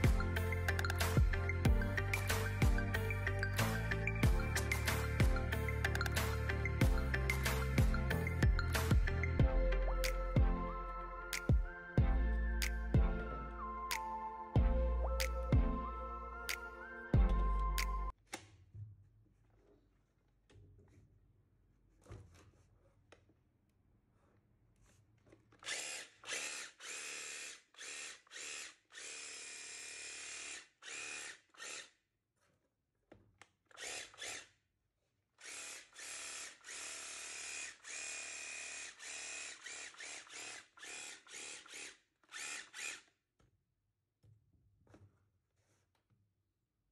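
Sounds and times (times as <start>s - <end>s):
hedge trimmer bursts: 35.4s - 43.0s.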